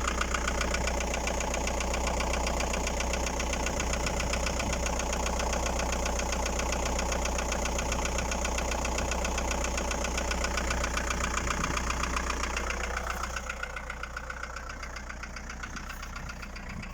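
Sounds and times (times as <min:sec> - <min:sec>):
diesel engine idling with knock: 0:00.0 - 0:16.9.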